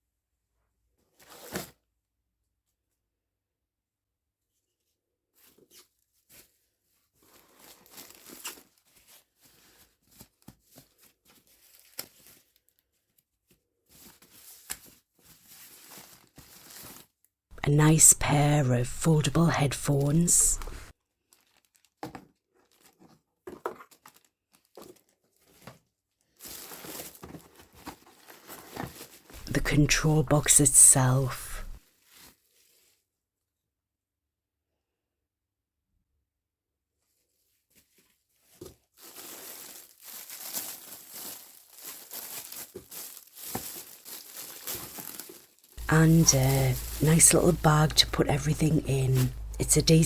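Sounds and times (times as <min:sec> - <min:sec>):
packaging rustling and crinkling: 0:01.1 - 0:01.8, 0:05.4 - 0:17.3, 0:20.0 - 0:29.5, 0:31.6 - 0:33.1, 0:37.3 - 0:50.0.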